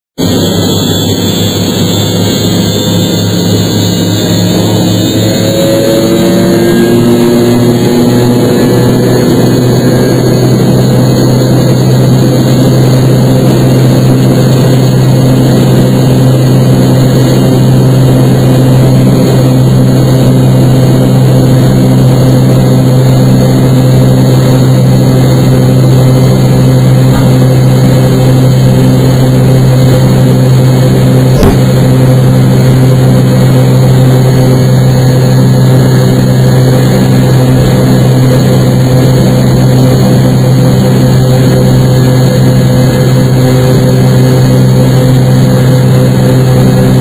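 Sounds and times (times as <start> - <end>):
jet engines droning in cabin: 0.2 - 47.0.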